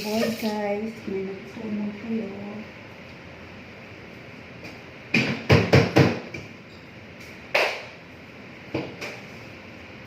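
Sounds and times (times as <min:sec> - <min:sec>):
kitchenware clattering: 0:00.0 - 0:00.6.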